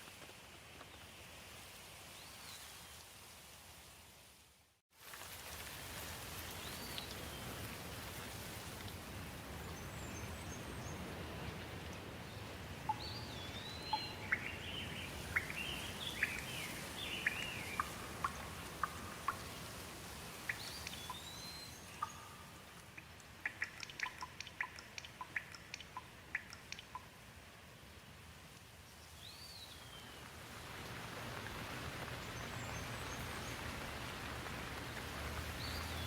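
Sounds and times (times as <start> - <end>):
steady rain: 0.0 - 36.0
water drops dripping: 12.8 - 14.7, 15.3 - 19.7, 20.4 - 27.2.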